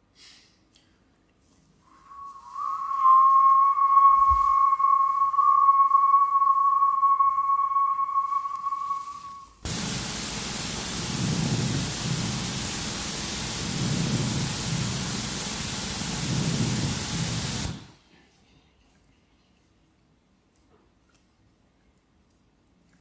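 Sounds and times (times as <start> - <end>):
steady high tone: 1.9 - 9.6
loud static white noise: 9.7 - 17.9.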